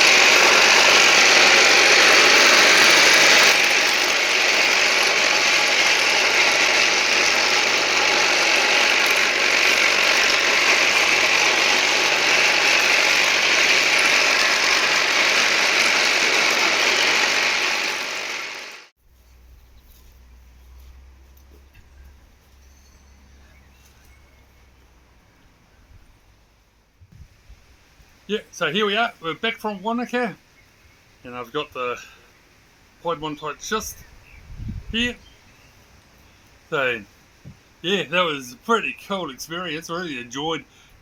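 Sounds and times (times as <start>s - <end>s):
machine running with rattling grinding: 0.0s - 18.9s.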